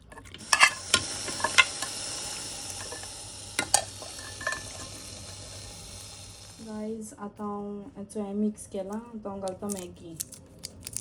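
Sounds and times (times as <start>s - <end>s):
spoon knocking and scraping pot: 0.0s - 2.0s, 2.8s - 5.1s
meat sizzling in a pot: 0.0s - 6.9s.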